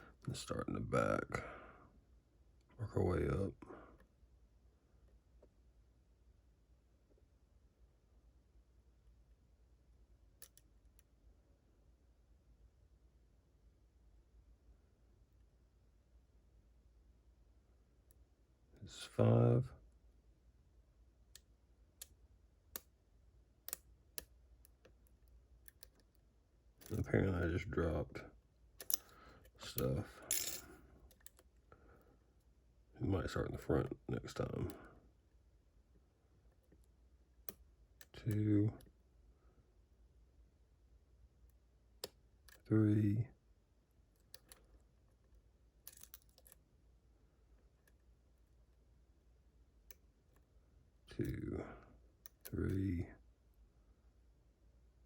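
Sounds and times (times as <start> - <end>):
lock picking clicks: 28.8 - 29.1, 45.9 - 46.6.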